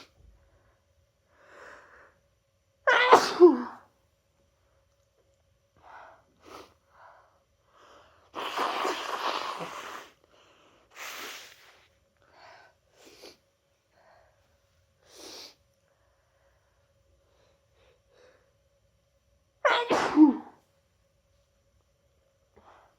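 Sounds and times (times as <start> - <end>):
person sneezing: 2.9 - 3.8, 8.4 - 10.2, 19.7 - 20.6.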